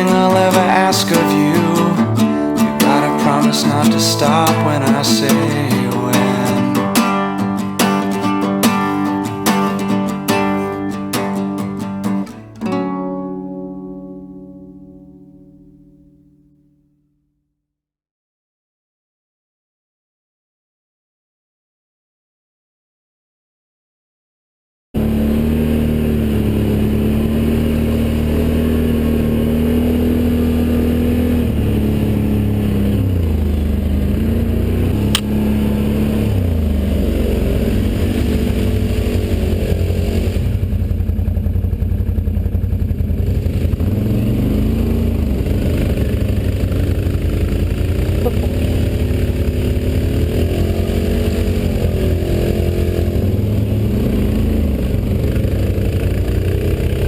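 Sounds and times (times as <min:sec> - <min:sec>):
quad engine revving: 0:00.0 - 0:12.6, 0:25.0 - 0:57.0.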